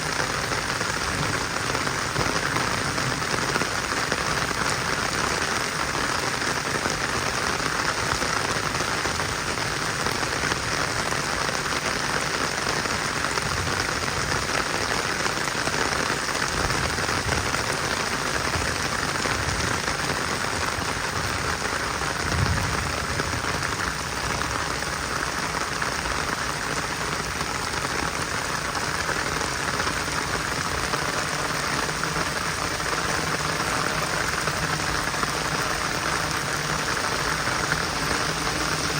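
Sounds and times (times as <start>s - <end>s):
heavy rain hissing: 0.0s - 38.9s
low rumble: 22.2s - 25.1s.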